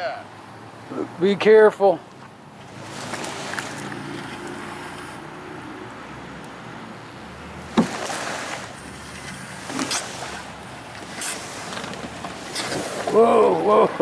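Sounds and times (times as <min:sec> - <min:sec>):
boat hull scraping: 0:02.2 - 0:05.3, 0:07.1 - 0:14.0.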